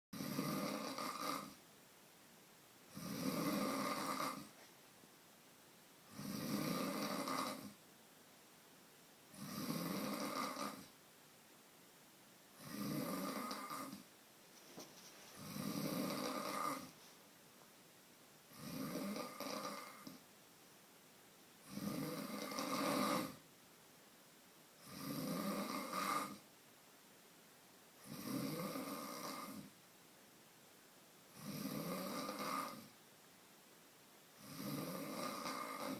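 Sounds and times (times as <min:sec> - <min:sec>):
person snoring loudly: 0:00.2 - 0:01.6, 0:02.9 - 0:04.6, 0:06.1 - 0:07.8, 0:09.3 - 0:10.9, 0:12.6 - 0:14.1, 0:15.4 - 0:17.0, 0:18.5 - 0:20.2, 0:21.6 - 0:23.4, 0:24.8 - 0:26.4, 0:28.0 - 0:29.7, 0:31.3 - 0:32.9, 0:34.4 - 0:35.9.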